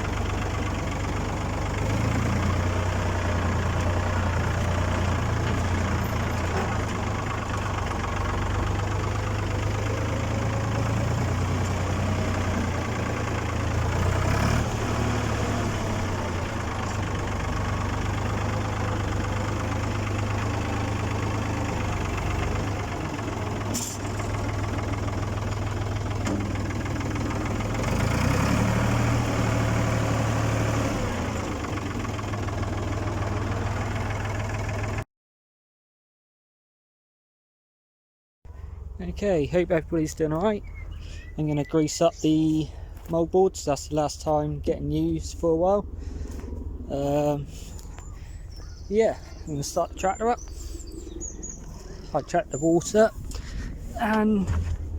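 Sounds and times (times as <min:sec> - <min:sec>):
tractor engine under load: 0:00.0 - 0:35.0, 0:38.5 - 0:54.9.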